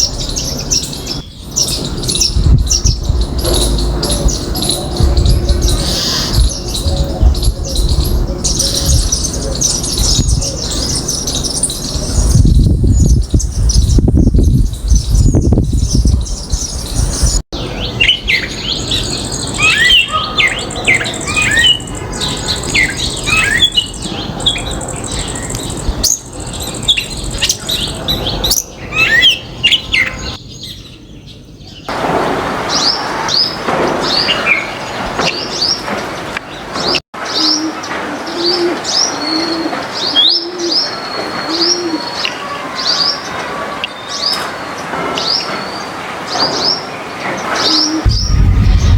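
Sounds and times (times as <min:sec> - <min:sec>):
songbirds chirping: 0:00.0 - 0:32.0, 0:32.7 - 0:48.9
low rumble: 0:01.8 - 0:11.2, 0:48.1 - 0:48.9.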